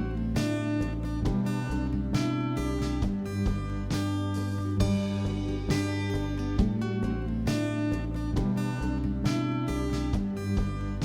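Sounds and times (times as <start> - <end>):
strummed acoustic guitar music: 0.0 - 11.0.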